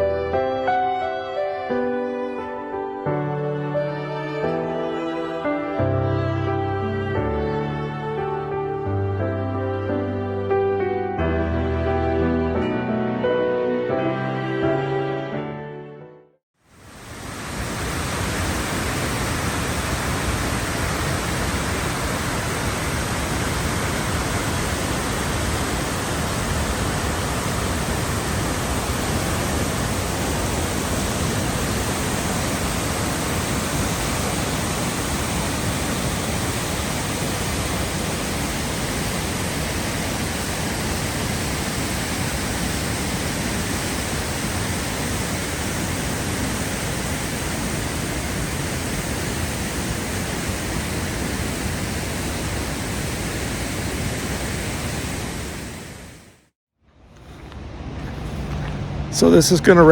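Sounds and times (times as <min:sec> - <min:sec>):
falling water rushing: 0:16.7 - 0:56.4, 0:57.3 - 0:59.9.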